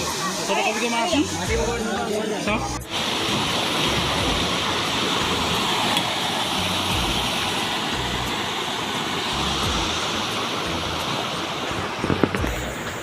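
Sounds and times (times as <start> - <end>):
waterfall rushing: 0.0 - 13.0
wind rumble on microphone: 9.3 - 13.0.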